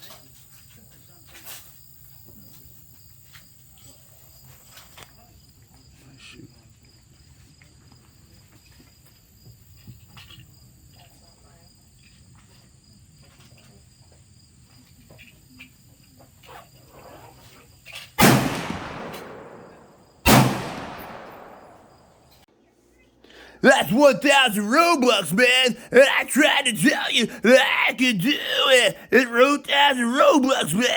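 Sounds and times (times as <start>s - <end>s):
loud gunshots with echo: 18.2s - 22.3s
crickets chirping: 18.3s - 22.4s.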